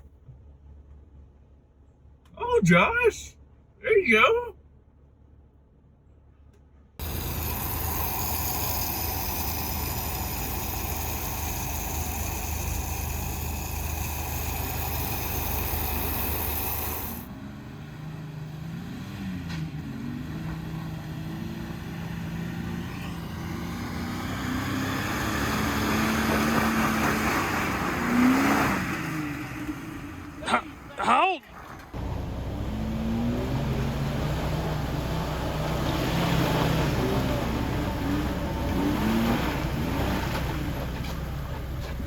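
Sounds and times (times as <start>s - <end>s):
high engine whine: 7.0s - 17.3s
off-road vehicle engine revving: 7.0s - 42.0s.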